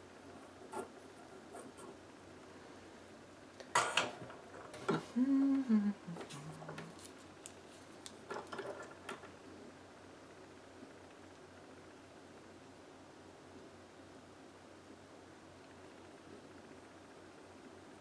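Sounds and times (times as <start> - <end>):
person humming: 5.0 - 7.0.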